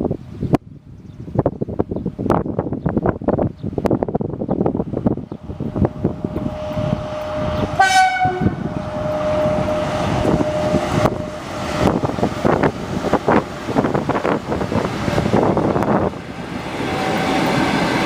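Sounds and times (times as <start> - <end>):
locomotive horn blast: 6.3 - 11.6.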